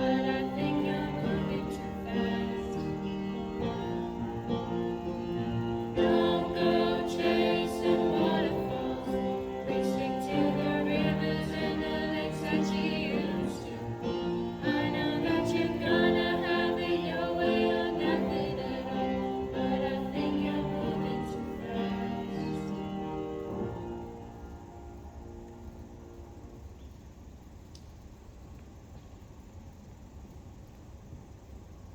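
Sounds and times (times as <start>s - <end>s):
song with singing voices: 0.0s - 24.2s.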